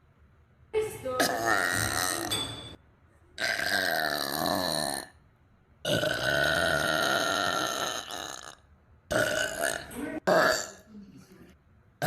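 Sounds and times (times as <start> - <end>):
girl burping: 1.2 - 2.4, 3.4 - 5.1, 5.9 - 11.2.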